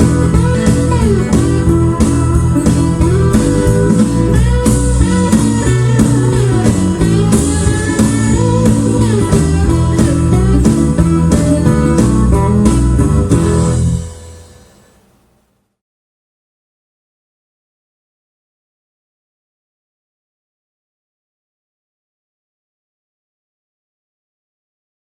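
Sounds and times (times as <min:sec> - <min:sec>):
blues slide guitar music: 0:00.0 - 0:14.6.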